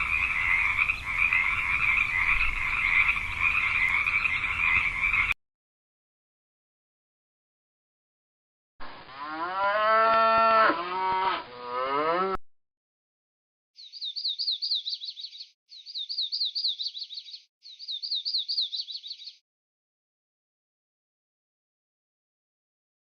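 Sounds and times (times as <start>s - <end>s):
cow mooing: 9.2s - 12.4s.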